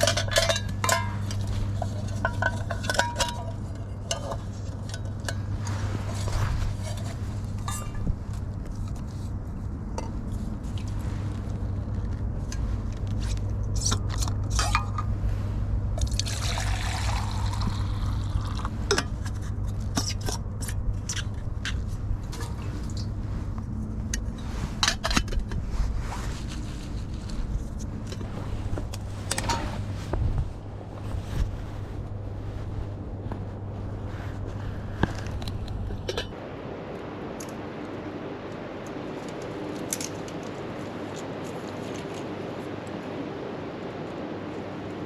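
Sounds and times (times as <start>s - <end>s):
steady low rumble: 0.0s - 45.0s
liquid pouring into container: 16.0s - 18.7s.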